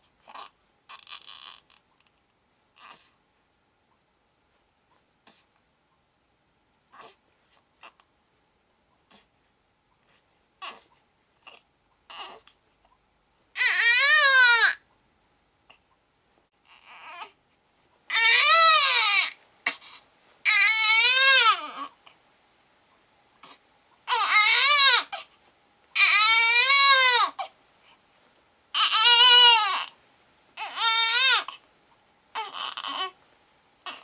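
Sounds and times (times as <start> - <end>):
baby crying: 0.3 - 1.6, 11.5 - 12.5, 13.6 - 14.8, 16.6 - 17.4, 18.1 - 19.4, 20.5 - 22.0, 23.4 - 25.3, 26.0 - 27.5, 28.8 - 30.0, 30.6 - 31.6, 32.3 - 33.2.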